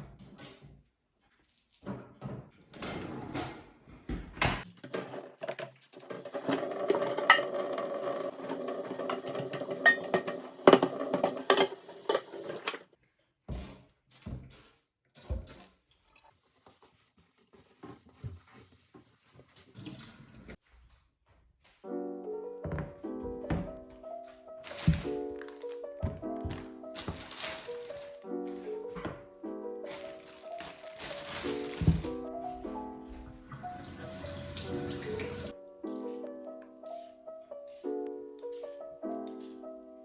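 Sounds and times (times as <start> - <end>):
water running: 4.7 - 13.0, 22.7 - 36.3
dishes clinking: 4.9 - 12.8
soft piano music: 21.8 - 40.0.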